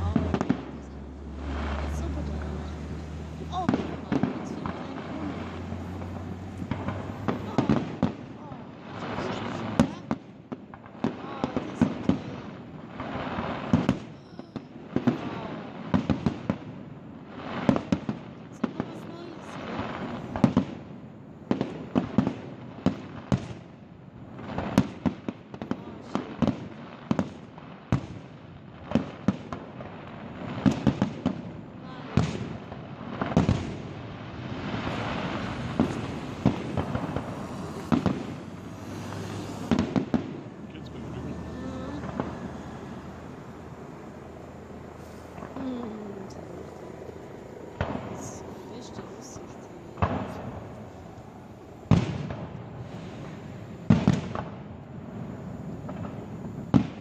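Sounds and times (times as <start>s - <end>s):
fireworks crackling: 0.0s - 57.0s
firework shells bursting: 24.4s - 41.1s
steady hiss: 34.5s - 57.0s.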